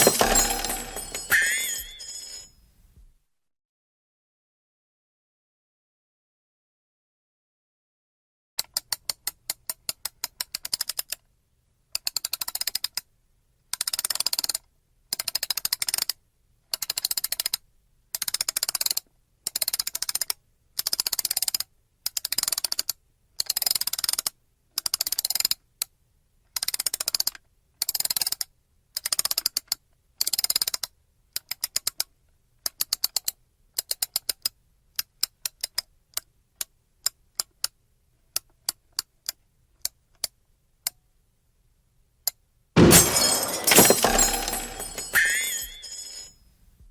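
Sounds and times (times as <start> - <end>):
ratchet clicking of clock winding: 8.6 - 11.2, 12.0 - 13.1, 13.7 - 25.9, 26.5 - 36.2.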